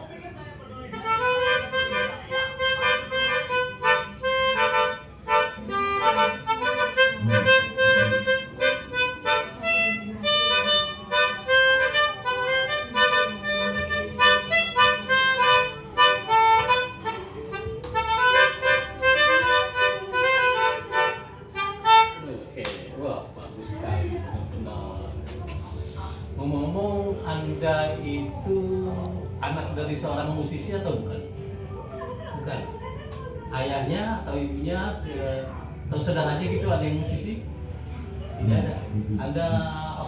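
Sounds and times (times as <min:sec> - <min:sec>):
melodica melody: 0:00.8 - 0:22.6.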